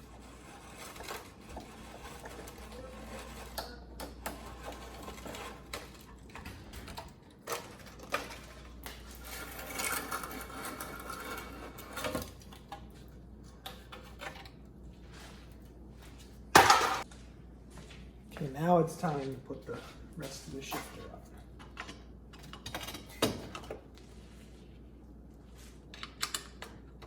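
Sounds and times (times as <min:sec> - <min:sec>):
loud metal clank: 0:16.6 - 0:17.0.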